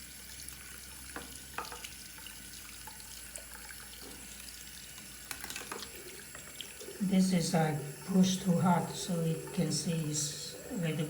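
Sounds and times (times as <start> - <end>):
tap water running into sink: 0.0 - 11.0.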